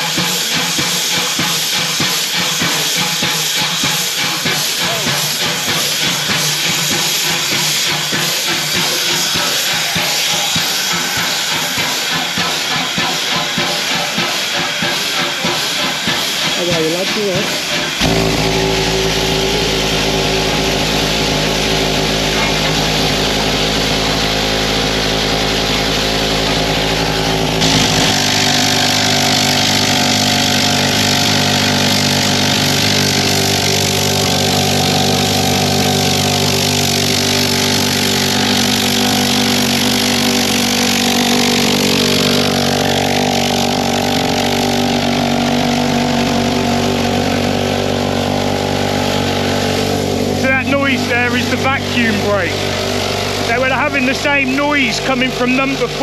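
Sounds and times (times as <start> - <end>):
hiss: 0.0 - 24.7
mechanical hum: 4.9 - 56.0.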